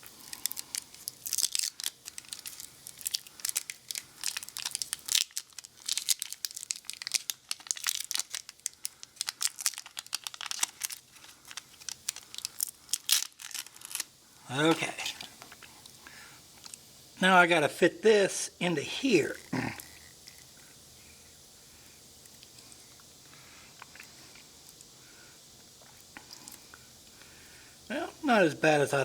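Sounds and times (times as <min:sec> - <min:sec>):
sticky material crackling and peeling: 0:00.0 - 0:15.6.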